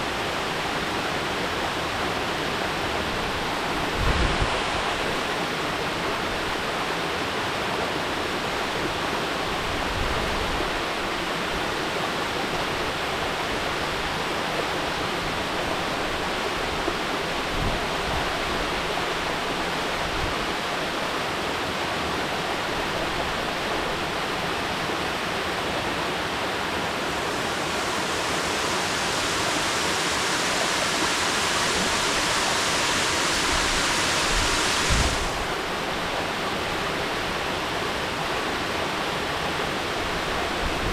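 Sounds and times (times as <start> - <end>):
waterfall rushing: 25.5 - 36.8.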